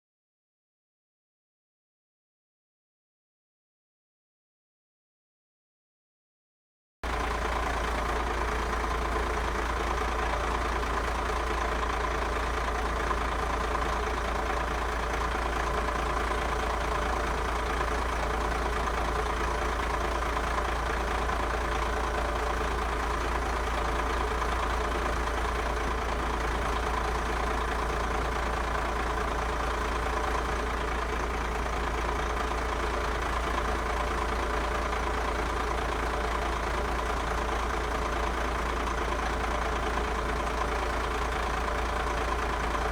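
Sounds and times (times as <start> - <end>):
bus diesel engine running: 7.0 - 42.9.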